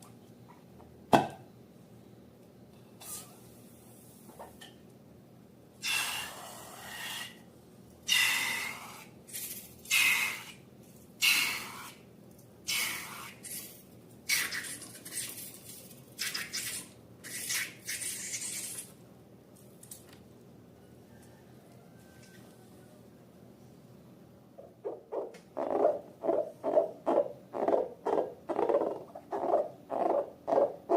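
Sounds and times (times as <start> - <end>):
short hissing sputtering bursts: 16.5 - 18.9.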